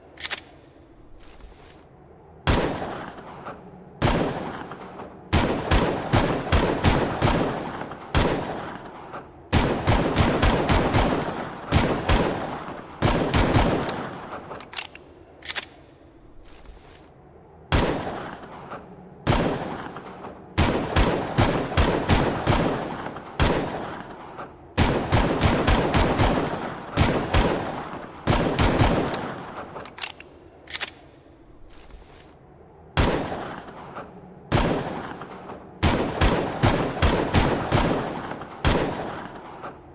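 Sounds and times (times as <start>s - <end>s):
pistol shots echoing: 34.5s - 39.6s.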